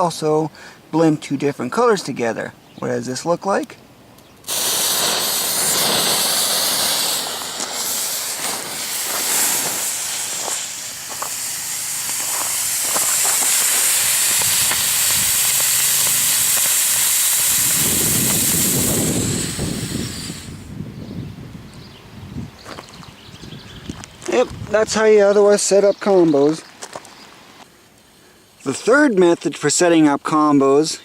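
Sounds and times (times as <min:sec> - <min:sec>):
faint crackles: 0:03.7 - 0:17.0
smoke balls hissing: 0:04.4 - 0:20.8.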